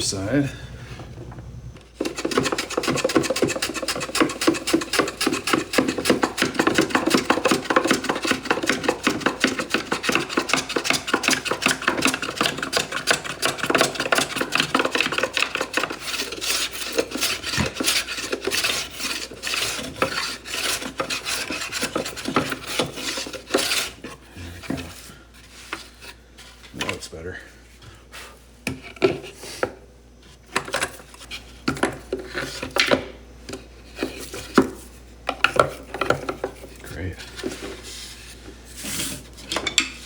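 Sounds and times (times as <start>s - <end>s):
sanding wood by hand: 2.0s - 23.9s.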